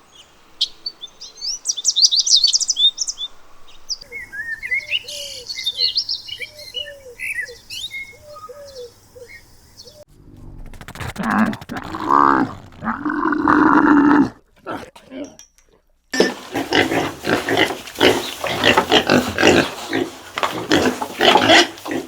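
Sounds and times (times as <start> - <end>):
small birds chirping: 0.1 - 10.1, 16.2 - 22.0
large animal calling loudly: 10.9 - 14.9.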